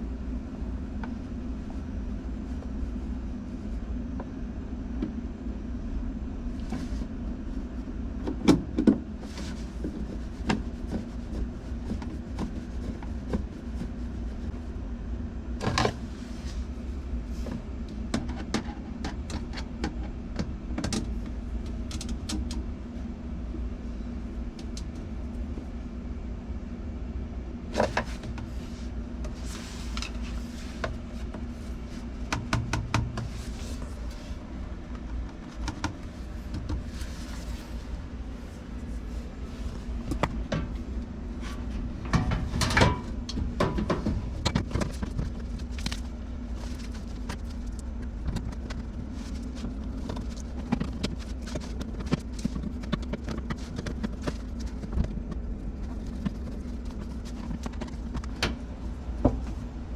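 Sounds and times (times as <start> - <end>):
steady low hum: 0.0 - 59.9.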